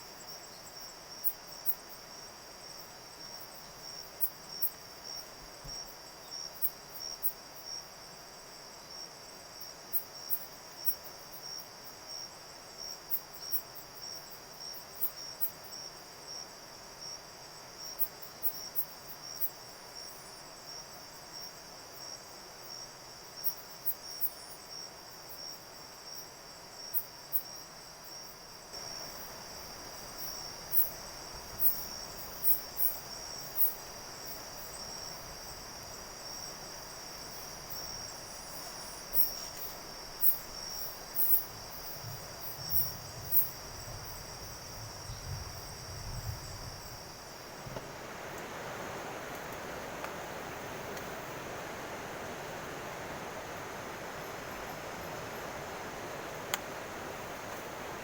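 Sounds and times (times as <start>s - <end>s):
insect trill pulsing: 23.4s - 47.7s.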